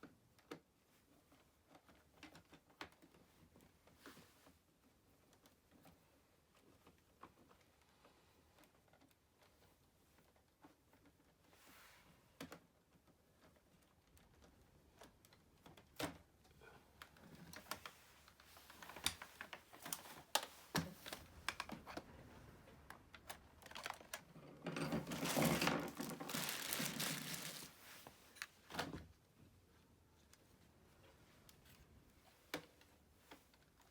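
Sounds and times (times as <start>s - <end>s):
plastic parts clicking and rattling: 12.4s - 22.1s, 22.7s - 29.1s
plastic rubbing and scraping: 17.2s - 28.7s.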